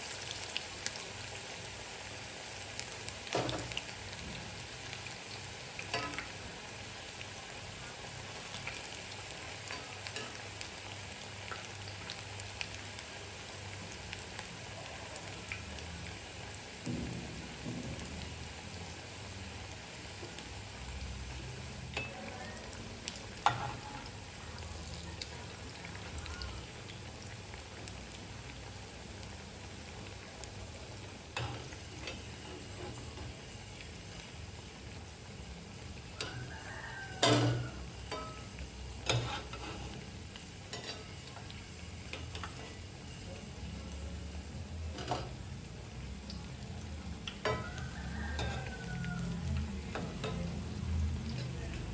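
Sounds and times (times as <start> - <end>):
food sizzling in hot oil: 0.0 - 51.9
utensil clinking against pan: 37.2 - 38.5.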